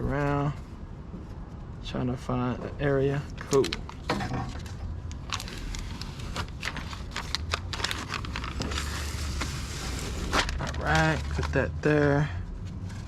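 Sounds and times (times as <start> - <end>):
low steady hum: 0.0 - 13.0
plastic parts clicking and rustling: 3.4 - 5.8.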